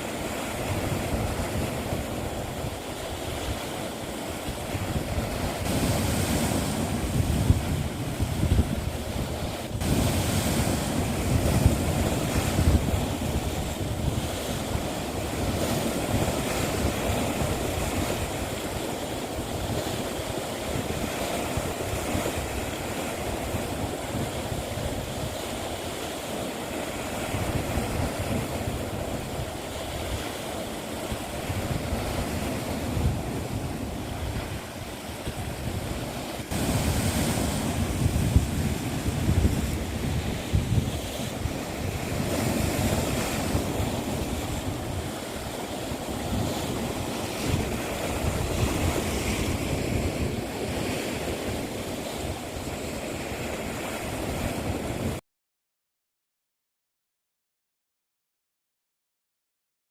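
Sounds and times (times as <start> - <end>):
sea waves washing onto shore: 0.0 - 55.2.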